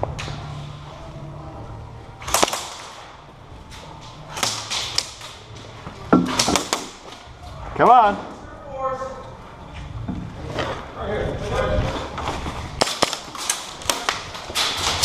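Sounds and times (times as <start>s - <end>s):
airsoft gunfire snaps: 2.2s - 3.0s.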